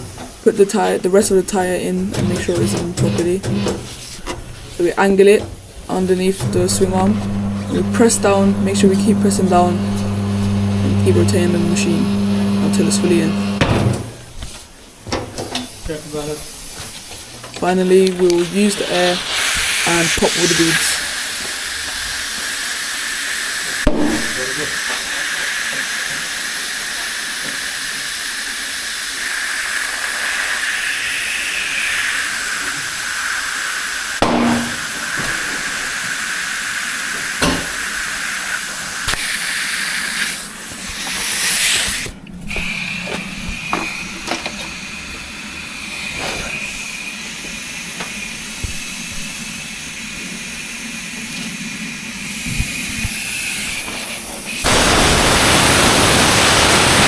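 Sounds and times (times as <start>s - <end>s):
compressed air hissing into tyre: 18.2s - 44.2s, 45.0s - 57.0s
loud rush of air: 18.4s - 22.8s, 54.5s - 57.0s.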